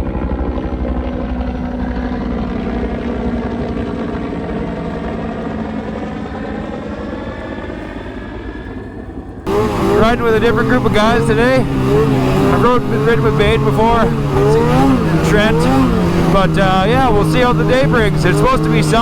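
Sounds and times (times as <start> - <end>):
engine running steadily: 9.5 - 19.0.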